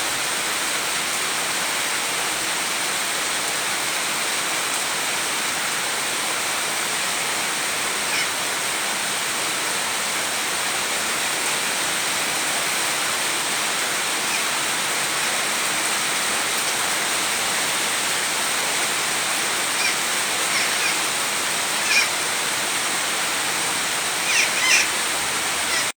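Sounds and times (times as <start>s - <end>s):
steady rain falling: 0.0s - 26.0s
high bird calls: 7.8s - 8.4s, 13.6s - 15.4s, 19.0s - 22.9s, 23.6s - 26.0s.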